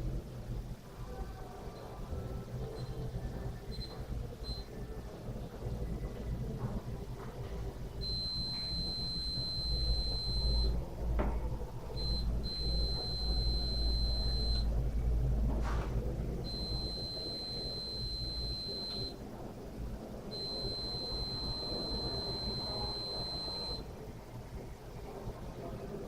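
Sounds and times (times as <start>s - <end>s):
low hum: 0.0s - 26.0s
high-pitched electronic beep: 8.0s - 10.8s, 12.0s - 14.7s, 16.5s - 19.2s, 20.3s - 23.8s.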